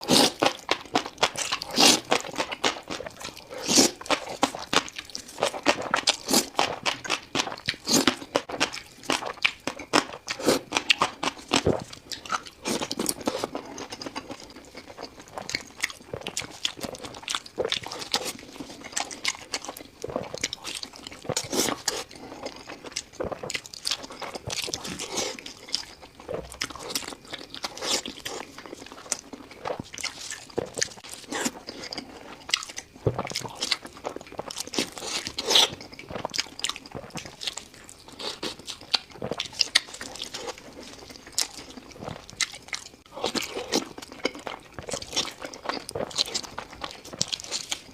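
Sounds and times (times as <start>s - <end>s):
person crunching and chewing: 0.0s - 47.9s.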